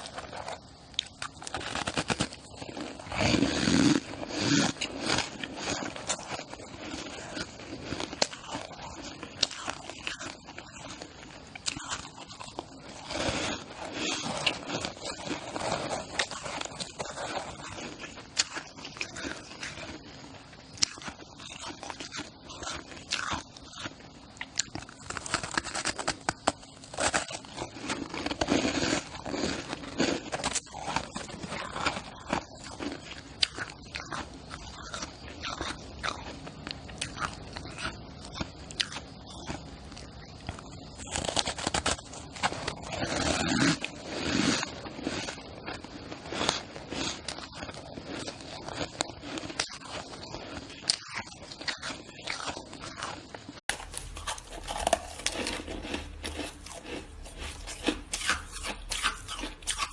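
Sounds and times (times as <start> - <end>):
chewing crunchy ice: 0.0 - 59.9.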